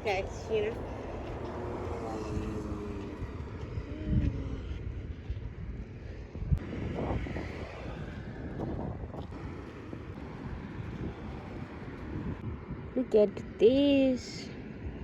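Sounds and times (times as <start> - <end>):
low outdoor rumble: 0.0 - 15.0
wind buffeting microphone: 0.0 - 15.0.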